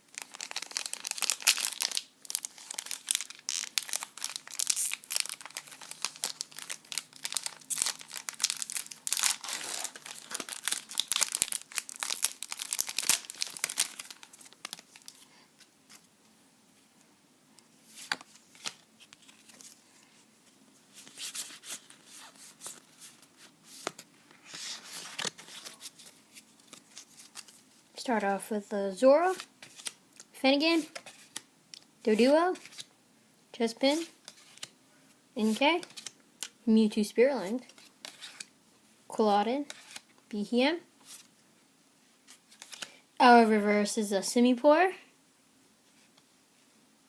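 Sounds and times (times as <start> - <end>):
foil wrapper tearing and crinkling: 0.1 - 15.1.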